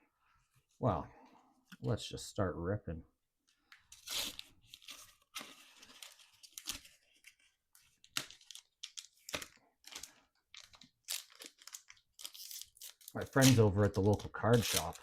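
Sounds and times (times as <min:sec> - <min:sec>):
foil wrappers tearing and crinkling: 0:04.0 - 0:07.3, 0:08.1 - 0:15.0.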